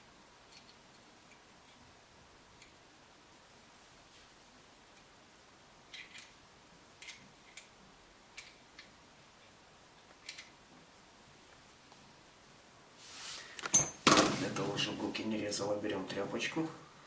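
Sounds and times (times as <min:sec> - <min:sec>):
small metal parts clicking: 0:05.9 - 0:06.4, 0:07.0 - 0:07.7, 0:08.3 - 0:08.9, 0:10.2 - 0:10.5.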